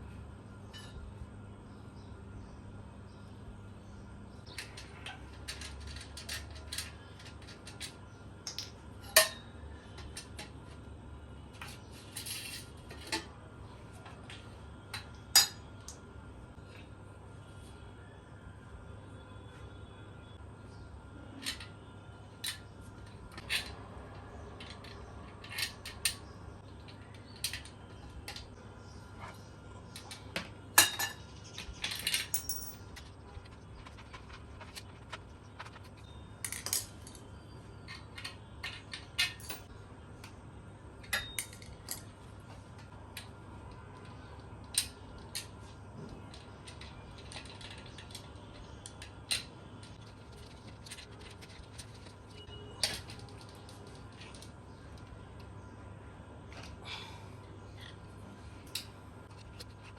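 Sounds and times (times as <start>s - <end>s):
steady low hum: 0.0s - 59.9s
metallic clinks and knocks: 30.8s - 34.7s.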